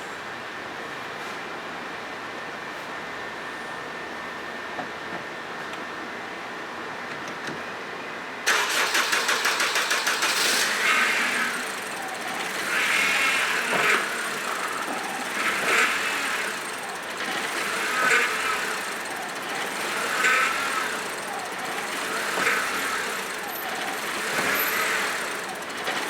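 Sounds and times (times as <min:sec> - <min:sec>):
car engine starting and running: 0:08.5 - 0:26.0
power steering whine: 0:08.5 - 0:26.0.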